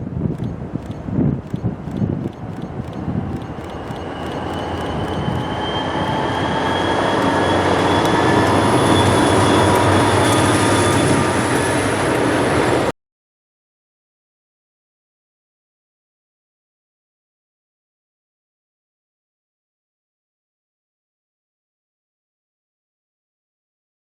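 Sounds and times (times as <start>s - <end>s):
high whine: 0.0s - 12.9s
diesel locomotive passing: 0.1s - 12.9s.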